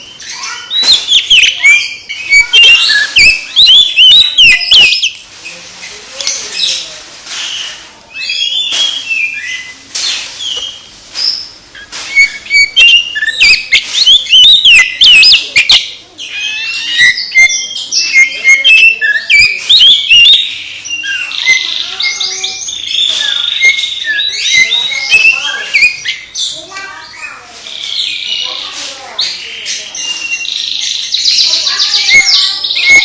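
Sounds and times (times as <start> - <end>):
sharp clicking bird notes: 0.0 - 5.3, 6.2 - 33.0
bird singing varied song: 0.0 - 33.0.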